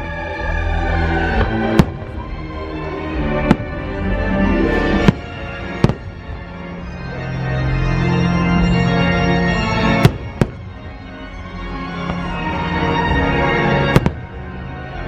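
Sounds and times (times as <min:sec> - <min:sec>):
loud show music with organ tones: 0:00.0 - 0:15.0
fireworks bursting: 0:01.4 - 0:02.4, 0:03.4 - 0:04.2, 0:05.0 - 0:06.6, 0:09.9 - 0:11.1, 0:13.8 - 0:14.5.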